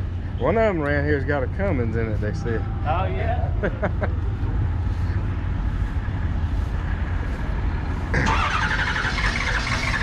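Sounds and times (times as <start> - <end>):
diesel engine revving: 4.7 - 10.0.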